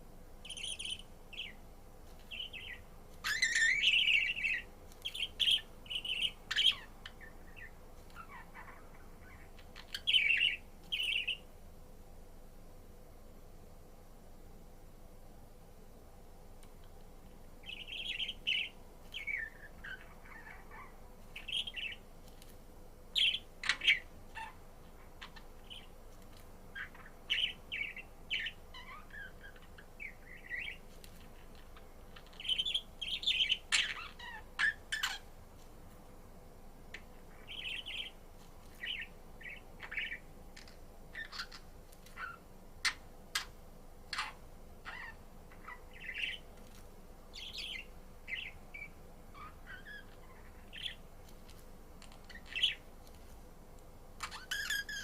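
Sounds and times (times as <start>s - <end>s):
budgerigar chirping and warbling: 0.5s - 1.6s, 2.3s - 11.4s, 17.7s - 22.0s, 23.2s - 25.9s, 26.8s - 30.8s, 32.2s - 35.3s, 38.8s - 41.6s, 42.2s - 43.5s, 44.1s - 46.4s, 47.4s - 51.0s, 52.3s - 52.8s, 54.2s - 55.0s.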